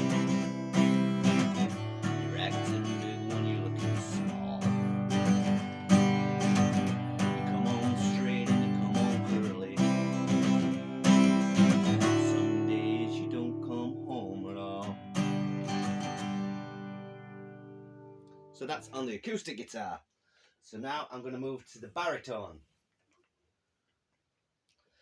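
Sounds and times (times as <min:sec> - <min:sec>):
acoustic guitar strumming: 0:00.0 - 0:19.0.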